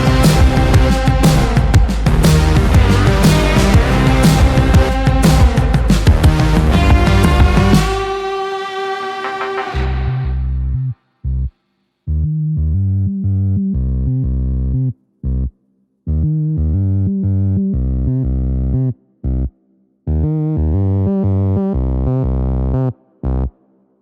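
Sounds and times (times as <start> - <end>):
synthesizer music with bass line: 0.0 - 11.5, 16.1 - 19.5, 20.1 - 23.6.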